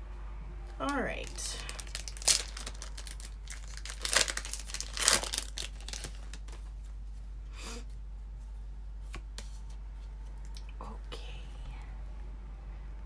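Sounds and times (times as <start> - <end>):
foil wrapper crinkling and tearing: 0.9 - 6.8.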